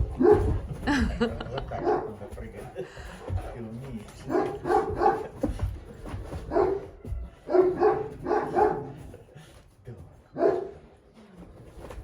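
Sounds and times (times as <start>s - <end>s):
dog barking: 0.0s - 0.8s, 1.5s - 2.4s, 4.2s - 9.2s, 10.3s - 11.0s.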